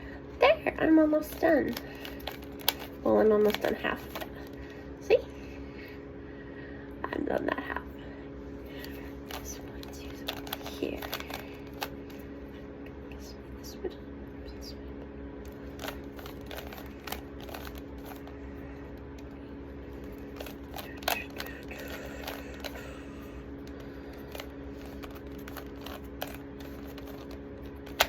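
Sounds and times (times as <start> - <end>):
steady background hum: 0.0 - 28.0
plastic cube clicking: 1.7 - 4.3, 9.3 - 11.9, 15.8 - 18.3, 20.3 - 22.8, 24.2 - 28.0.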